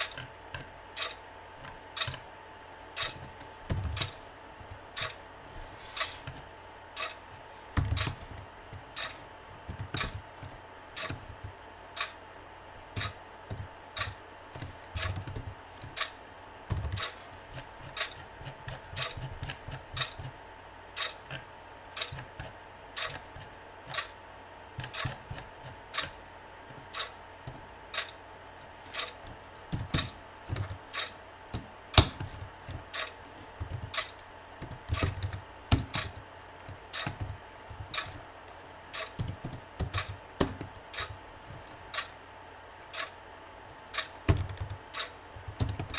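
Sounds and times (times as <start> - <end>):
computer keyboard typing: 3.0 - 5.2, 7.8 - 20.3, 28.9 - 43.1, 43.9 - 45.9.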